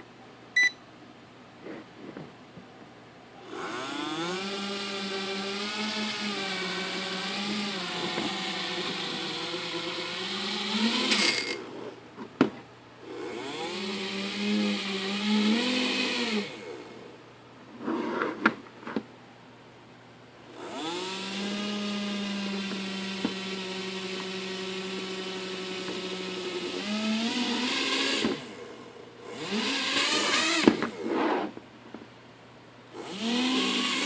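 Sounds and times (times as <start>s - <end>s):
small drone motors whining: 3.5s - 11.6s, 20.6s - 28.5s, 29.3s - 31.5s, 33.0s - 34.0s.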